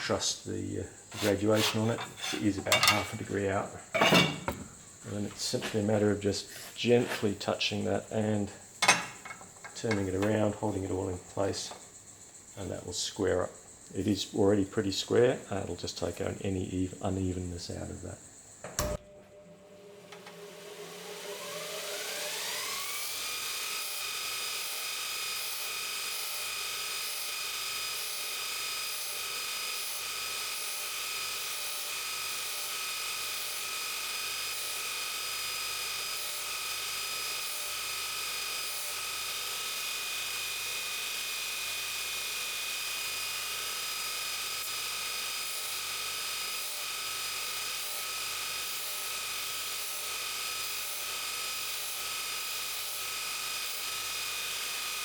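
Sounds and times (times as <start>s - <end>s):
sanding wheel motor whine: 1.1s - 3.4s, 19.3s - 27.2s.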